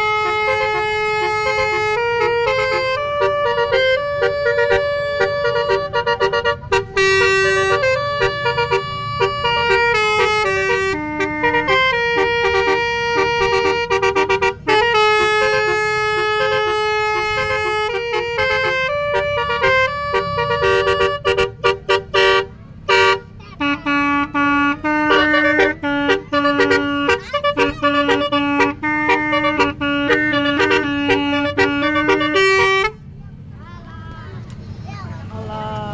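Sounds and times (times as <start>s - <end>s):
tuned air horns playing a tune: 0.0s - 33.0s
low steady rumble: 0.0s - 35.9s.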